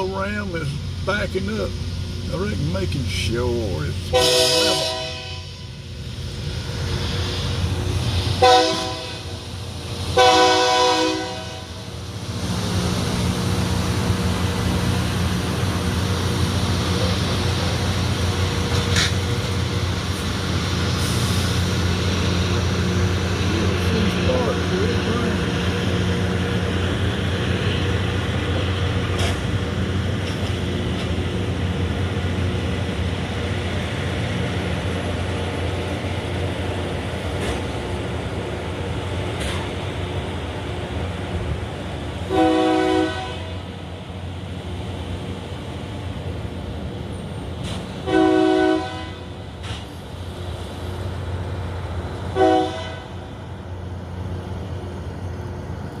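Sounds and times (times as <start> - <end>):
diesel engine running: 0.0 - 11.0, 11.7 - 56.0
horn blasts: 4.1 - 5.7, 8.4 - 9.3, 10.2 - 11.8, 42.3 - 43.6, 48.0 - 49.4, 52.4 - 53.2.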